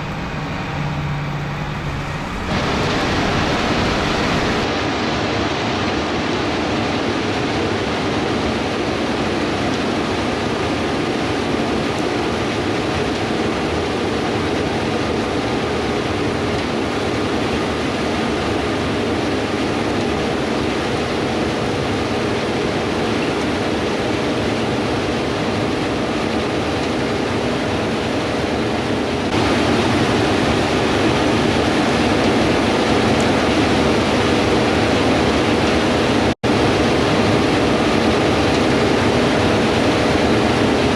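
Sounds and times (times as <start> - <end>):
harvester engine hum: 0.0 - 4.7
broad rushing noise: 0.0 - 40.9.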